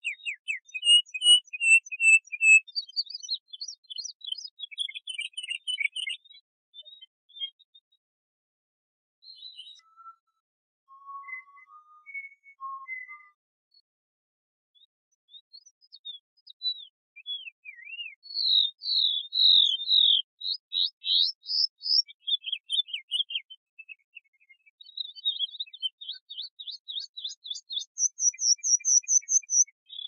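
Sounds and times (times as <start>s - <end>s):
canary singing: 0.0s - 2.6s, 3.6s - 6.3s, 25.4s - 29.7s.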